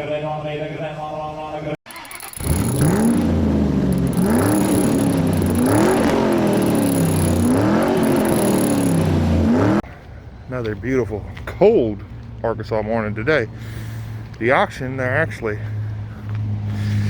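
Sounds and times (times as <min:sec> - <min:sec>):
engine revving over idle: 0:01.9 - 0:09.8.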